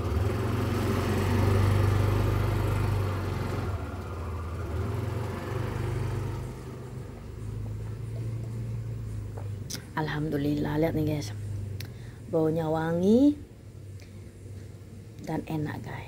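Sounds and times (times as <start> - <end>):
motor engine idling: 0.0 - 9.6.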